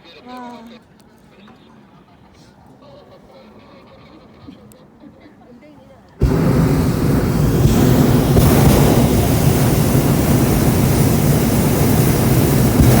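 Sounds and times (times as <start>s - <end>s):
propane burner roaring: 6.2s - 13.0s.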